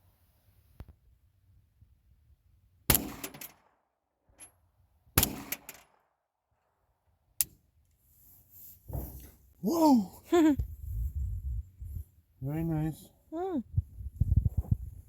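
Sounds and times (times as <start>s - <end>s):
loud gunshots: 2.9s - 3.4s, 5.2s - 5.7s
quick gunshot cracks: 2.9s - 3.7s, 5.2s - 6.0s.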